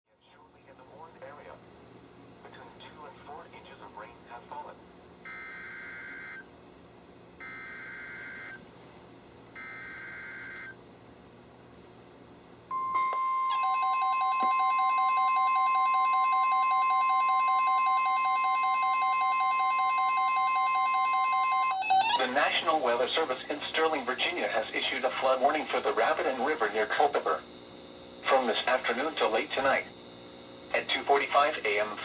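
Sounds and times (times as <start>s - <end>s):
radio receiver alarms pulsing: 5.3s - 6.5s, 7.4s - 8.6s, 9.6s - 10.8s, 12.7s - 22.5s
steady warning alarm tone: 5.3s - 6.5s, 7.4s - 8.6s, 9.6s - 10.8s, 12.7s - 23.3s.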